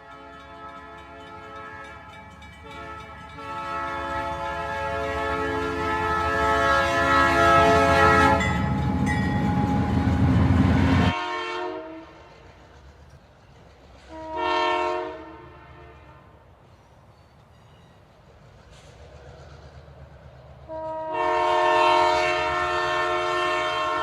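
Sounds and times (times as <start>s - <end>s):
train horn blast: 0.0s - 12.4s, 14.1s - 16.4s, 20.7s - 24.0s
train rushing noise: 0.0s - 24.0s.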